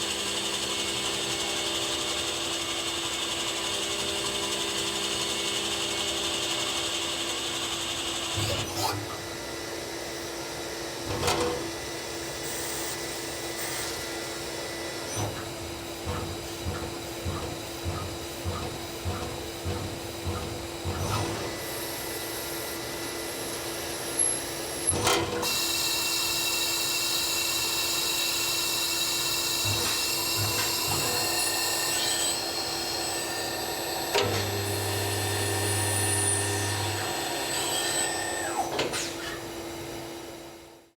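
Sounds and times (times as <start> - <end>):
lathe machine hum: 11.7 - 24.9, 25.5 - 38.8
bright machining noise: 11.7 - 40.0
machine knocks: 16.0 - 21.4.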